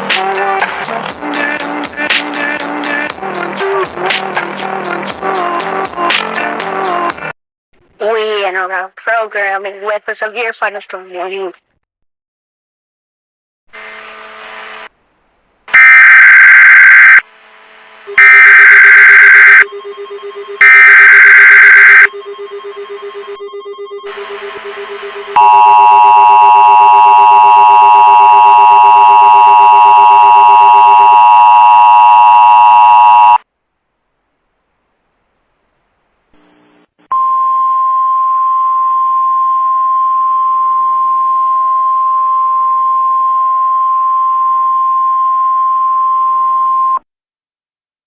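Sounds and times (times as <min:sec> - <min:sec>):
loud two-tone attention signal: 0:15.8 - 0:17.2, 0:18.1 - 0:24.4, 0:25.0 - 0:33.4
steady alert tone: 0:25.4 - 0:31.6.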